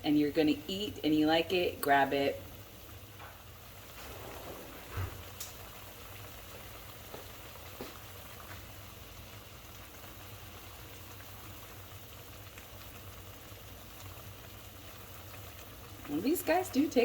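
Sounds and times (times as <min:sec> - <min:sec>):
noodles boiling and bubbling: 0:00.0 - 0:17.0.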